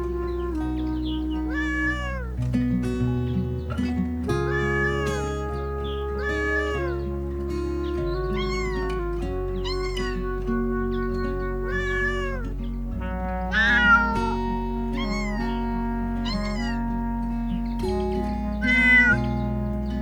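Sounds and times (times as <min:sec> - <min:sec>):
background music of held chords: 0:00.0 - 0:20.0
cat meowing: 0:01.2 - 0:02.4, 0:04.4 - 0:07.2, 0:08.0 - 0:19.3.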